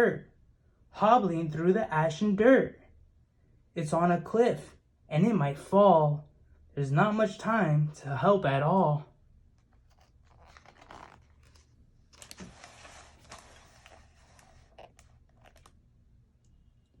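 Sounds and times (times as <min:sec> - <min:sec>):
paper rustling: 0:09.5 - 0:15.8.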